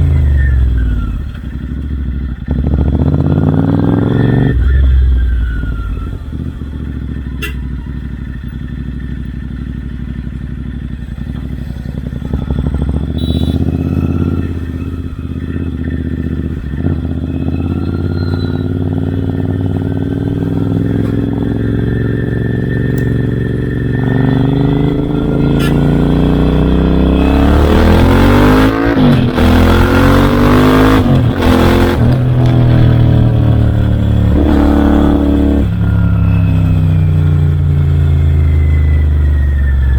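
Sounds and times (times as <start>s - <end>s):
motorcycle engine revving: 0.0s - 39.9s.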